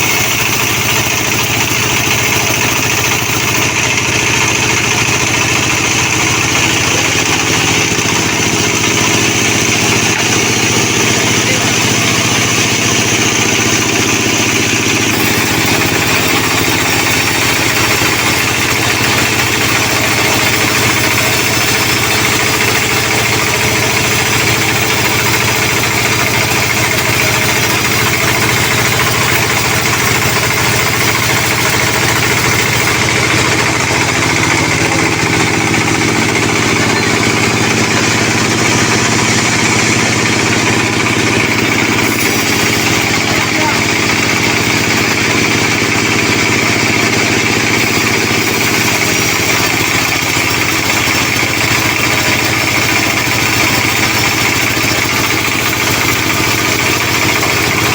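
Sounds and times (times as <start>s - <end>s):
sawmill machinery engine drone: 0.0s - 57.9s.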